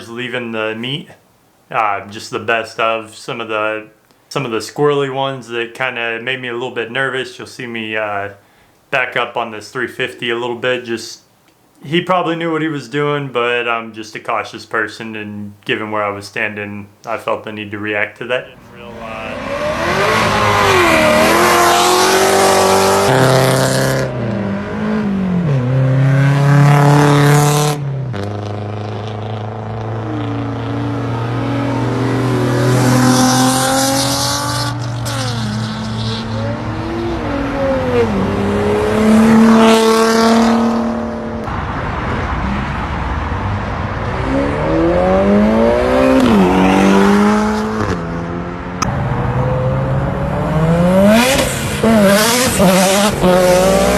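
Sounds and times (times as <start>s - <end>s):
car engines revving: 18.5s - 53.9s.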